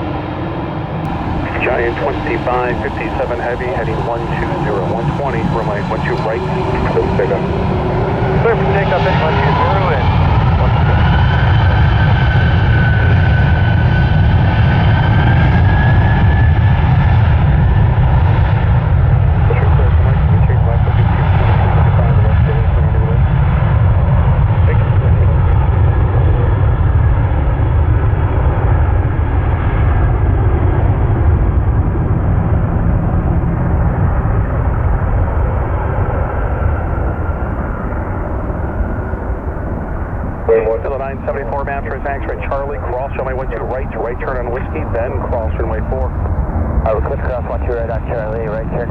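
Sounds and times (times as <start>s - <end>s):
jet engines spooling up: 0.1s - 17.5s, 32.9s - 48.9s.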